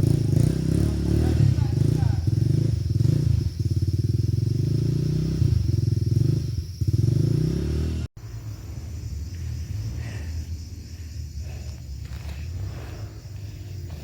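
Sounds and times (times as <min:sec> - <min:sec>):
dirt bike engine revving: 0:00.0 - 0:09.0.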